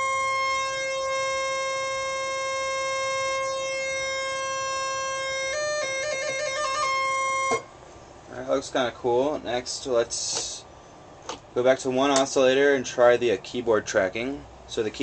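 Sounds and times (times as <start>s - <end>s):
analogue synthesizer note: 0.0s - 7.7s.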